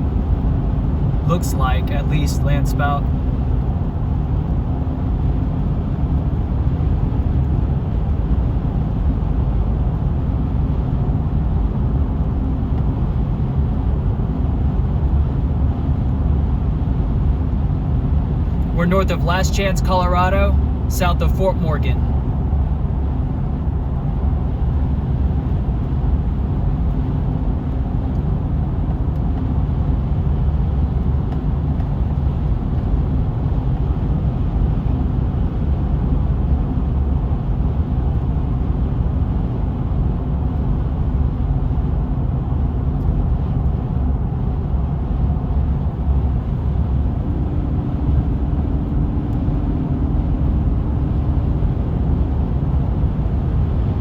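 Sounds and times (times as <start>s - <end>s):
car road and engine noise: 0.0s - 54.0s.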